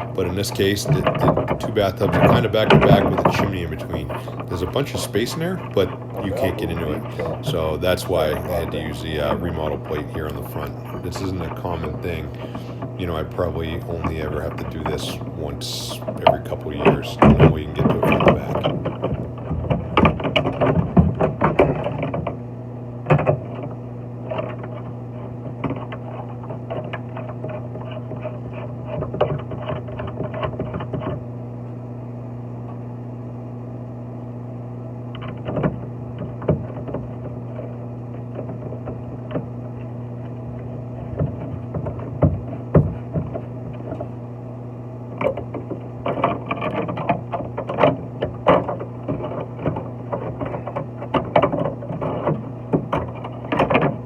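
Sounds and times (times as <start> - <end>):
clicks and knocks: 0.0 - 22.4, 35.1 - 44.2, 45.1 - 54.0
low hum: 0.0 - 54.0.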